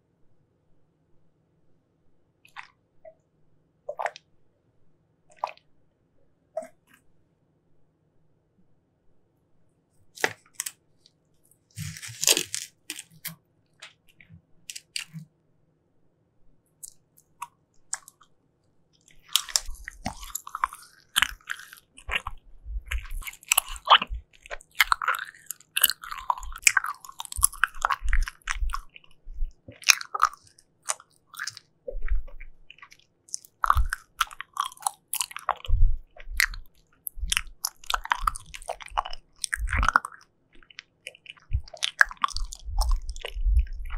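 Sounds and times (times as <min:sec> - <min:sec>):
person chewing jelly: 0:02.5 - 0:03.2, 0:03.9 - 0:04.3, 0:05.3 - 0:05.7, 0:06.6 - 0:07.0, 0:10.2 - 0:15.3, 0:16.8 - 0:43.9.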